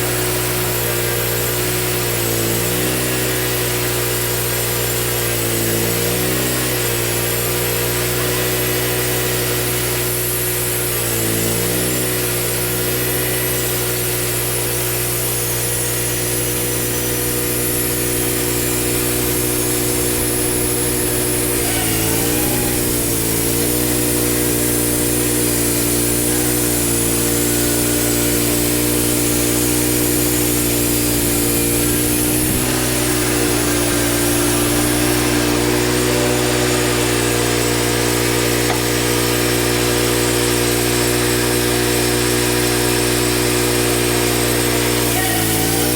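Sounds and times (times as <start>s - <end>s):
bandsaw mill sawing log: 0.0s - 45.9s
high hiss: 17.1s - 35.6s.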